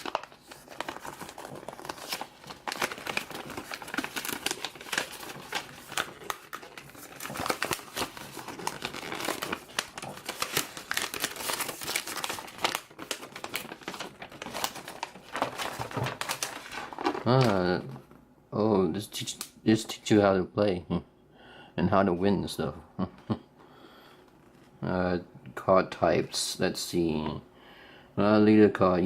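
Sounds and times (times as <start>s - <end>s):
packaging crinkling: 0.0s - 18.2s.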